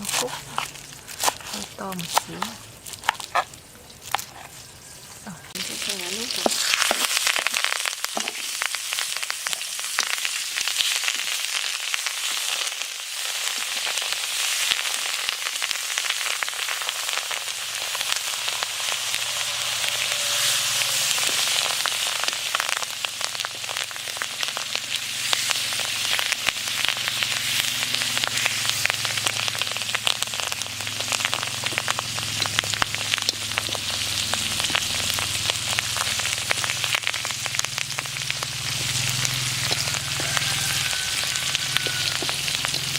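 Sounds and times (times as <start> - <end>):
deep-frying sizzle with pops: 0.0 - 42.9.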